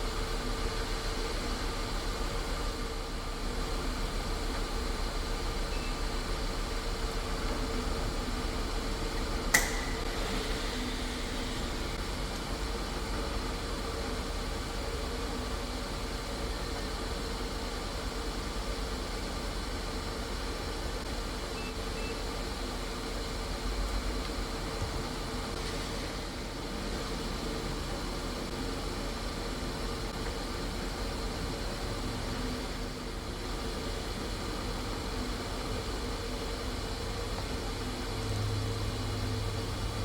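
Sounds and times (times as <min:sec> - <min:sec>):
milling machine spindle hum: 0:00.1 - 0:40.0
sharp click: 0:09.5 - 0:10.2.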